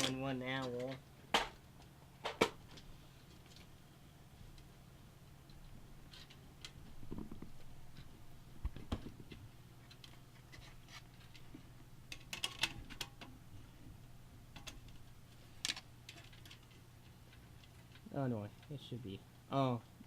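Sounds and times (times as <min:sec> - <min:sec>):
faint low hum: 0:00.0 - 0:20.0
clicks and taps of computer parts: 0:12.1 - 0:13.3.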